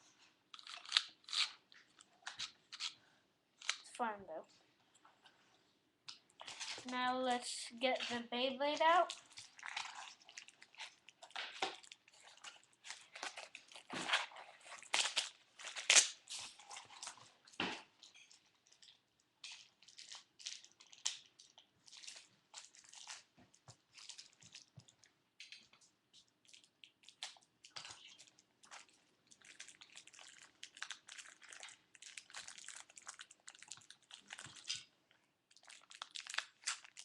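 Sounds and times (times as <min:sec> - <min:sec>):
plastic packaging crinkling: 0:06.2 - 0:25.1, 0:26.4 - 0:37.0.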